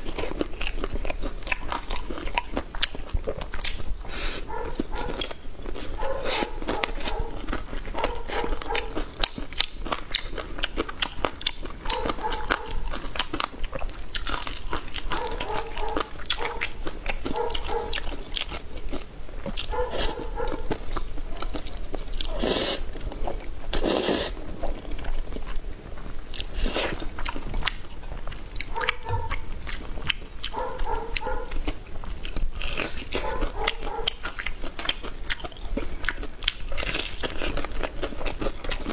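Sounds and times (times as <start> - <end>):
crunchy chewing: 0.0 - 38.9
loud crunching bites: 28.6 - 38.9.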